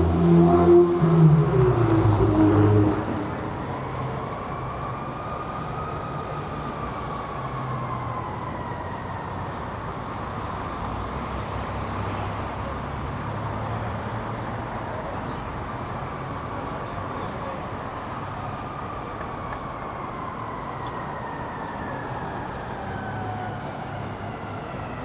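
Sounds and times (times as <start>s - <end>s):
faint distant siren: 0.0s - 11.6s, 17.8s - 25.0s
street traffic rumble: 0.0s - 25.0s.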